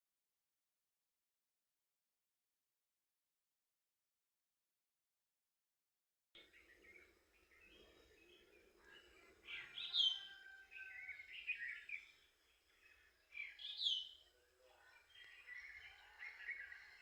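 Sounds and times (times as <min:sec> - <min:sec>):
songbirds chirping: 0:06.4 - 0:17.0.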